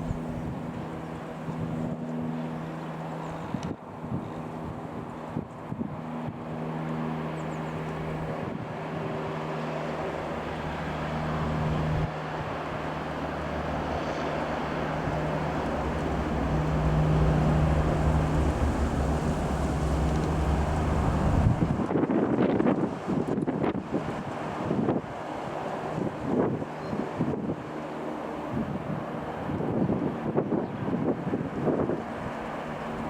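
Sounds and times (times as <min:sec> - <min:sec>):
wind buffeting microphone: 0:00.0 - 0:02.3, 0:10.2 - 0:27.7, 0:28.4 - 0:33.0
propeller aircraft droning: 0:00.0 - 0:33.0.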